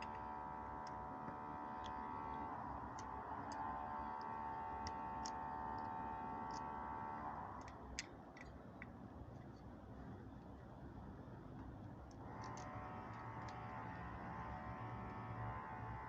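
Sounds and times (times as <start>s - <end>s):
pump motor humming: 0.0s - 7.8s, 12.2s - 16.0s.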